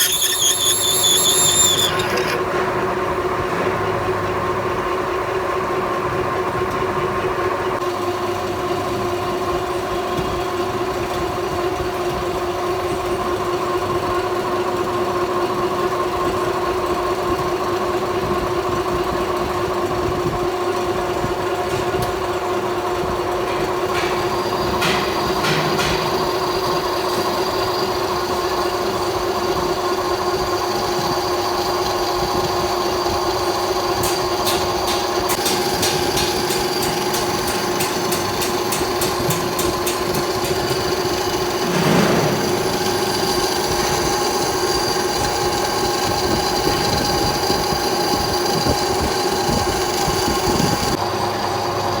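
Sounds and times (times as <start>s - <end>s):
metal lathe running: 0.0s - 2.5s, 23.4s - 52.0s.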